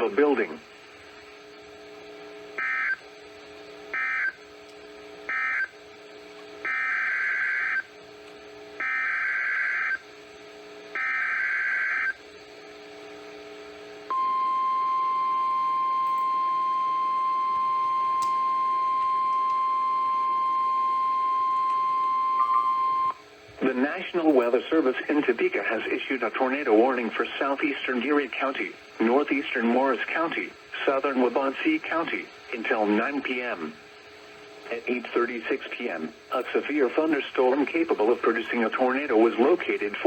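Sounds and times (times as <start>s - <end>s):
steady alarm tone: 2.5s - 3.0s, 3.9s - 4.4s, 5.2s - 5.8s, 6.6s - 7.9s, 8.8s - 10.0s, 10.9s - 12.2s, 14.1s - 23.2s.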